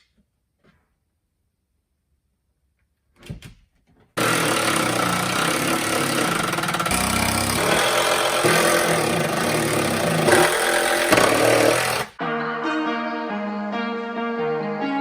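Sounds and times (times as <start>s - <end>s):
loud power tool running: 4.2s - 12.2s.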